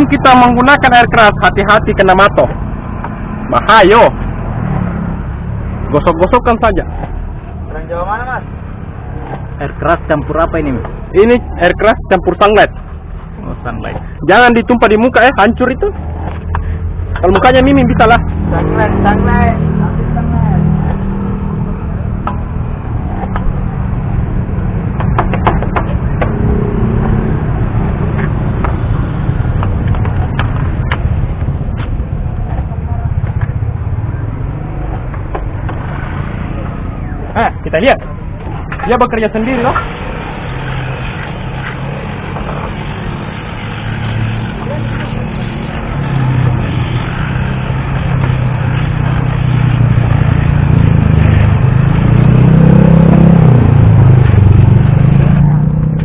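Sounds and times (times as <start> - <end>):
vehicle engine running: 0.0 - 56.0
sharp clicks or knocks: 25.0 - 26.4.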